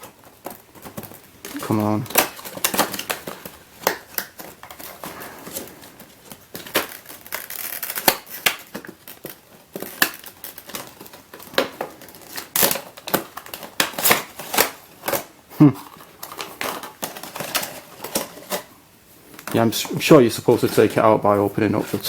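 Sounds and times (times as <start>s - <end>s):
cardboard packaging crinkling: 6.3s - 15.3s, 16.0s - 18.7s.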